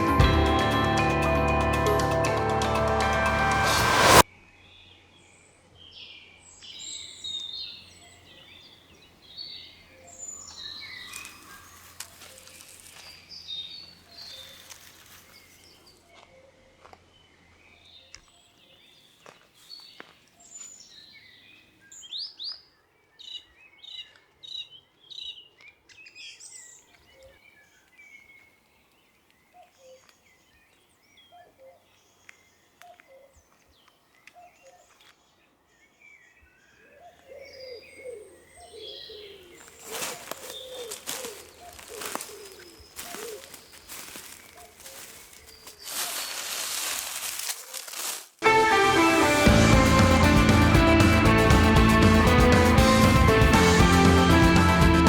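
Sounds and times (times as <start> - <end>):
songbirds chirping and whistling: 4.4 - 48.2.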